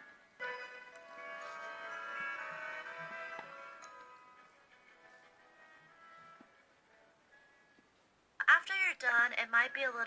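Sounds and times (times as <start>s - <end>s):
chime-like melody: 0.4s - 6.4s.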